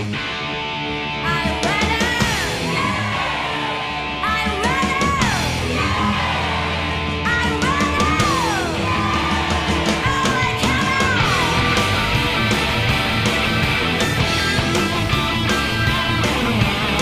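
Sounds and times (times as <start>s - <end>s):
rock music with steady beat: 0.0s - 17.0s.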